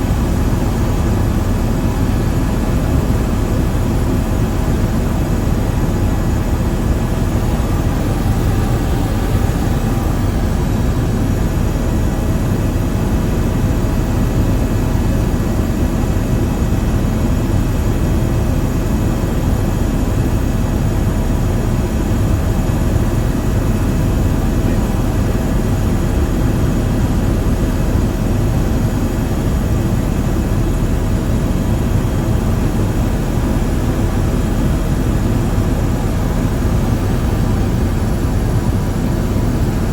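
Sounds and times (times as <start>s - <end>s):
faint tonal hum: 0.0s - 14.7s
aircraft engine drone: 0.0s - 39.9s.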